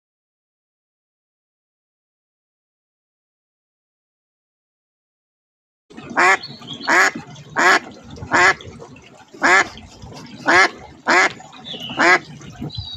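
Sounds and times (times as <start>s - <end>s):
duck quacking: 6.2s - 8.6s, 9.4s - 12.2s.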